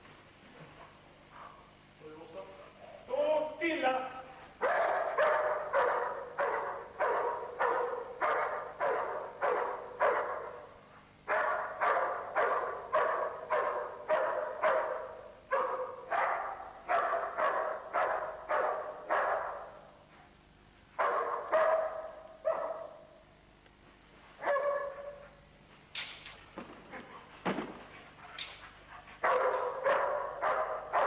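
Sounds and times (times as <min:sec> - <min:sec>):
dog barking: 0:00.8 - 0:01.8, 0:04.6 - 0:20.1, 0:21.0 - 0:23.2, 0:24.4 - 0:25.5, 0:26.7 - 0:31.0.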